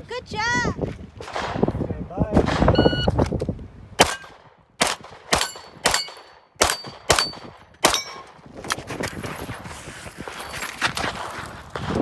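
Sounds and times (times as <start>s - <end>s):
gunshots: 1.2s - 1.7s, 4.0s - 8.3s.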